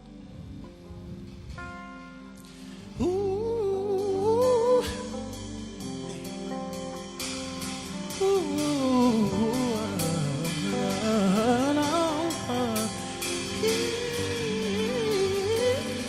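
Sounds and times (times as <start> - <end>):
drum kit: 0.0 - 16.0
sustained keyboard or guitar chords: 0.0 - 16.0
wordless vocal melody: 2.4 - 6.6, 7.2 - 16.0.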